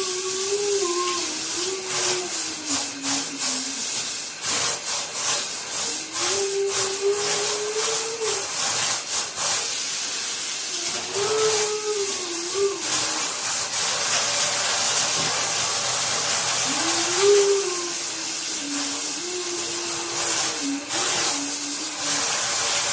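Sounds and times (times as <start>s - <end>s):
person singing wordless tune: 0.0s - 3.9s, 10.8s - 13.2s, 16.6s - 22.0s
shower water spraying: 0.0s - 22.9s.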